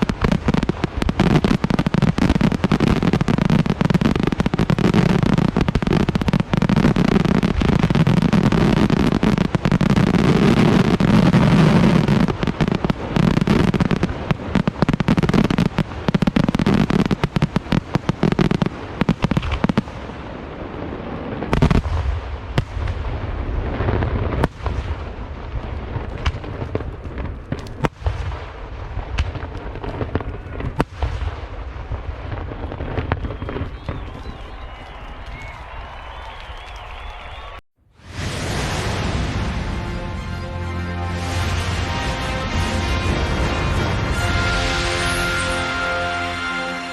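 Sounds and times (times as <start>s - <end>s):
firework bangs echoing: 0.0s - 36.2s
fireworks bursting and crackling: 0.0s - 46.9s.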